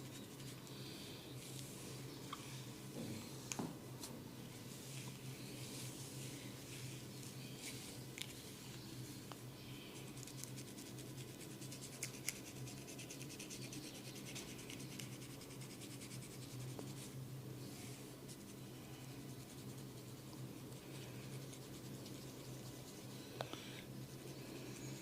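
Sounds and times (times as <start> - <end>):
steady low hum: 0.0 - 25.0
scratching hair and scalp: 19.2 - 23.2.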